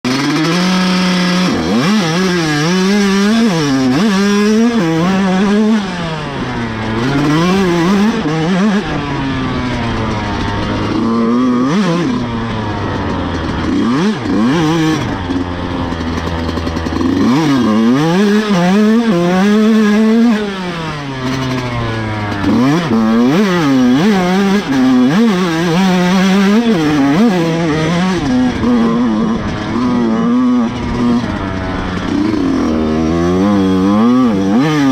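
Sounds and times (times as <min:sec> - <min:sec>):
two-stroke engine revving: 0:00.0 - 0:34.9.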